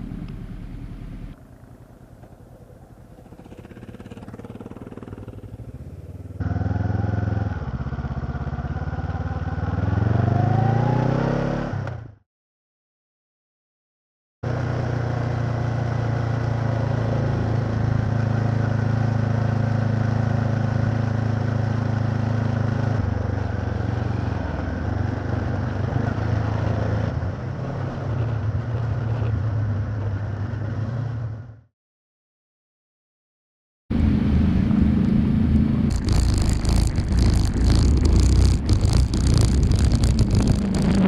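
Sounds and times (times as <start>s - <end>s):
motorcycle engine running: 0.0s - 10.5s, 33.9s - 41.0s.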